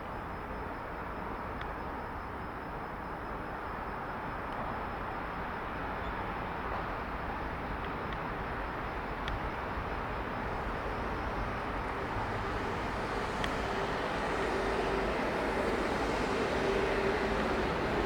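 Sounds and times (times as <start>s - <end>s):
electric train rumbling: 0.2s - 18.0s.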